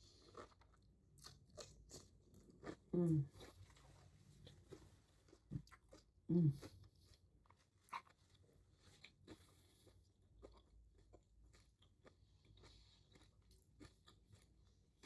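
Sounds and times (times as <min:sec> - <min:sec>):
person chewing food: 0:00.0 - 0:15.0.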